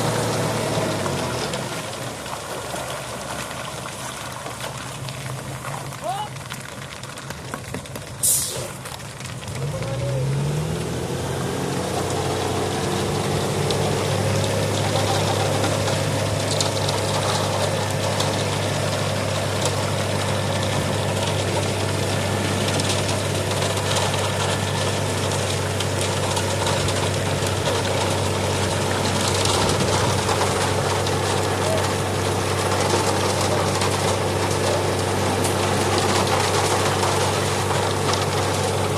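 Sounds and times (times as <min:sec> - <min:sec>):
engine droning: 0:00.0 - 0:38.9.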